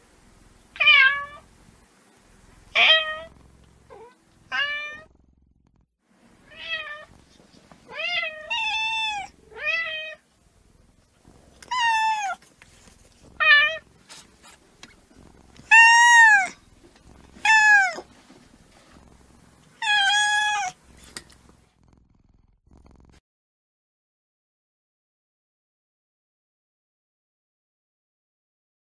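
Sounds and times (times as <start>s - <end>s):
kitten meowing: 3.9s - 5.1s, 7.9s - 10.2s, 11.6s - 12.4s, 15.6s - 16.6s, 17.4s - 18.1s, 19.8s - 20.8s.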